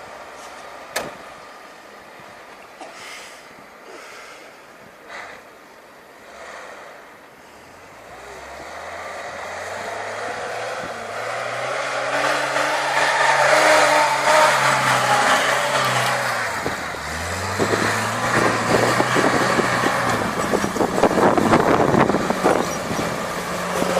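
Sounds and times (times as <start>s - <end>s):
vehicle engine accelerating: 8.0s - 23.9s.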